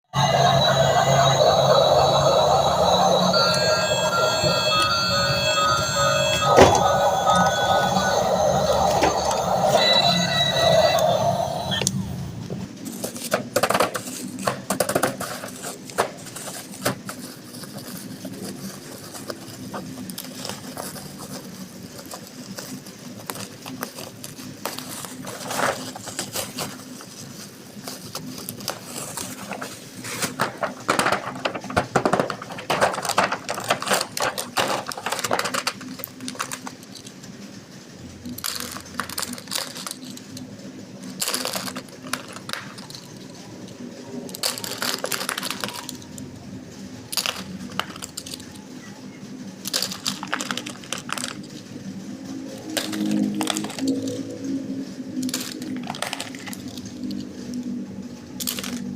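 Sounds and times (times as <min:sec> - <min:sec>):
plastic toy pieces clicking and rattling: 0:12.8 - 0:37.4, 0:38.1 - 0:46.3, 0:47.0 - 0:48.9, 0:49.5 - 0:51.8, 0:52.4 - 0:54.4, 0:55.1 - 0:58.9.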